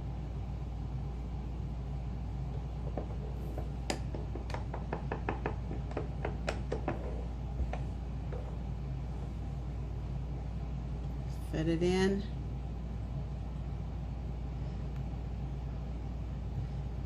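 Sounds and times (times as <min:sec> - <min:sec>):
steady low hum: 0:00.0 - 0:17.0
hammer tapping metal: 0:02.9 - 0:07.0.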